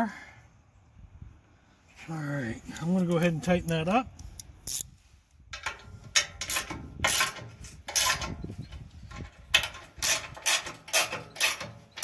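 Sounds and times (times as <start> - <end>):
ratchet wrench clicking: 4.4 - 4.9, 9.6 - 12.0.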